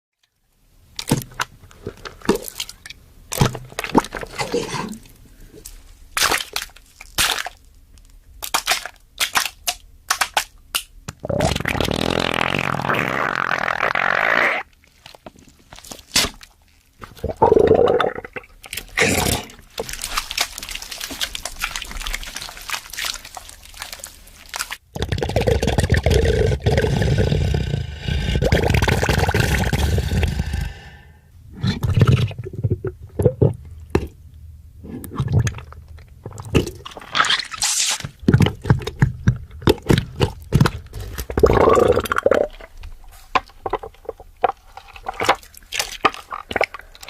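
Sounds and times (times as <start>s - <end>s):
foley crunches snaps and scrapes: 5.6s - 11.8s, 14.7s - 17.2s, 18.6s - 24.8s, 42.5s - 47.0s.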